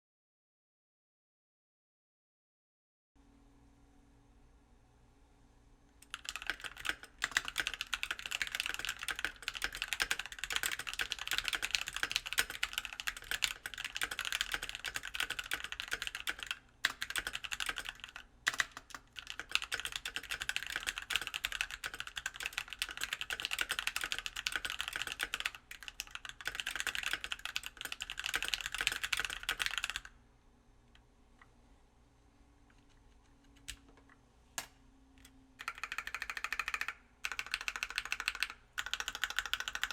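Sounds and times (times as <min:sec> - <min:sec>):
mechanical keyboard typing: 0:06.0 - 0:30.1, 0:35.6 - 0:39.9.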